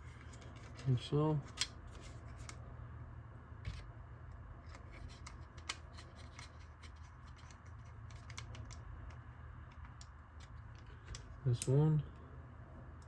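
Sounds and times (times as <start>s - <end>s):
plastic parts clicking and rubbing: 0.0s - 2.6s, 4.6s - 11.4s
steady low hum: 0.0s - 13.0s.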